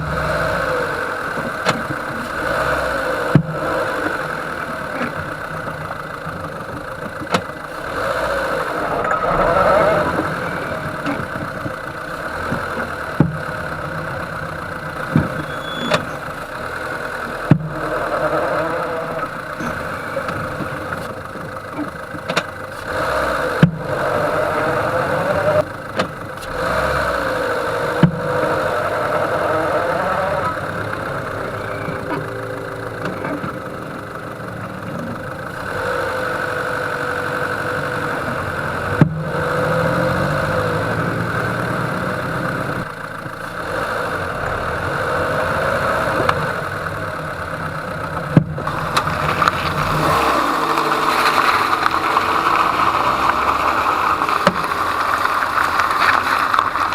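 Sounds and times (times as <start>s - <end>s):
car engine running: 0.0s - 56.9s
sharp knocks from wheel: 6.7s - 7.6s.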